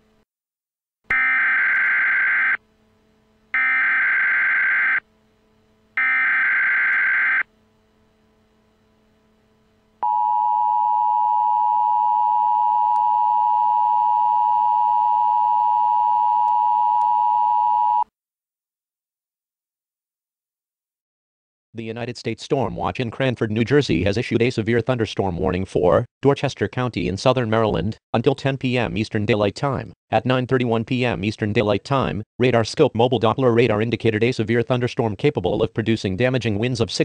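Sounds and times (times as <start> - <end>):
steady high alert tone: 3.6 - 5.0, 6.0 - 7.4.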